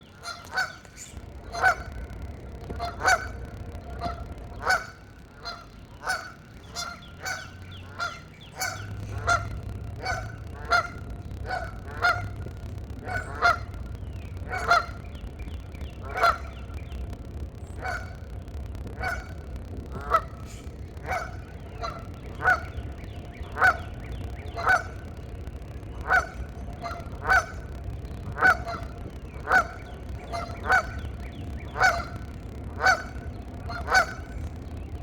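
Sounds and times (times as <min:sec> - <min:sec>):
geese honking: 0:00.0 - 0:35.0.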